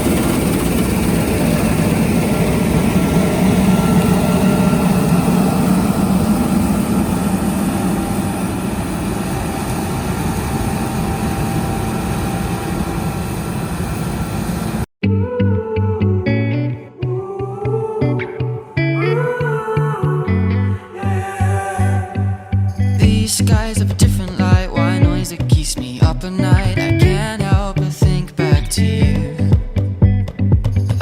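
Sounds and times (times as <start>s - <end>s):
faint machinery whine: 0.0s - 14.9s.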